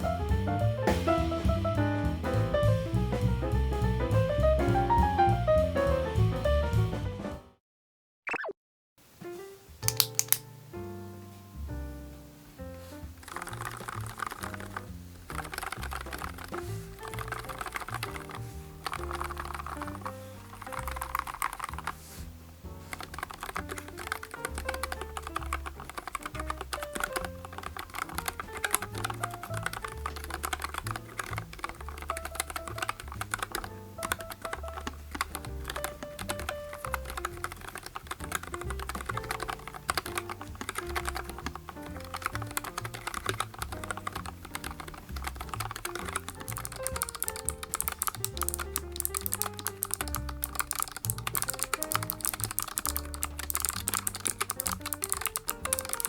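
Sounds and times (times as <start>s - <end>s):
background music: 0.0s - 7.6s, 9.8s - 56.0s
mechanical keyboard typing: 9.8s - 10.4s, 13.2s - 22.0s, 22.9s - 56.0s.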